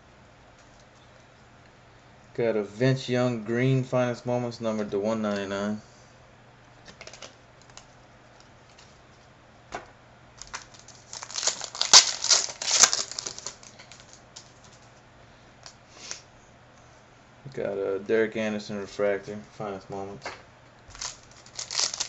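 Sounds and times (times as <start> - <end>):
cards and packaging clicking: 6.8 - 8.9, 10.4 - 14.9, 20.9 - 22.0.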